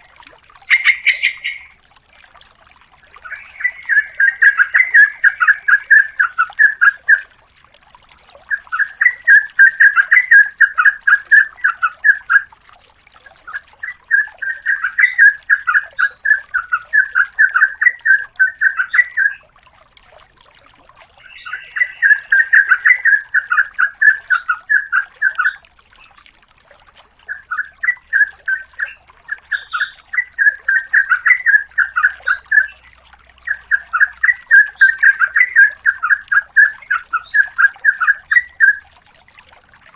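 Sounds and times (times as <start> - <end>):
bulbul singing bubbling notes: 0.0 - 7.4, 8.3 - 20.2, 20.8 - 39.9.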